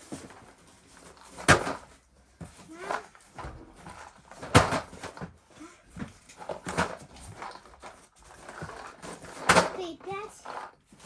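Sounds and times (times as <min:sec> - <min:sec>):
boxes knocking on shelving: 0:01.3 - 0:02.6, 0:03.3 - 0:07.0.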